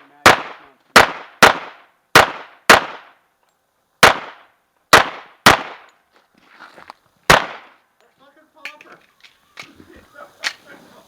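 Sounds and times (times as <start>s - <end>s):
pistol shots echoing: 0.2s - 3.1s, 4.0s - 5.9s, 7.3s - 7.7s.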